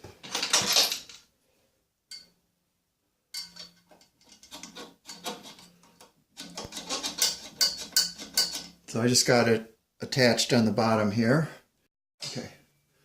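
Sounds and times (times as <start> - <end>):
metal hand tools clinking: 3.3 - 5.8, 6.4 - 8.8.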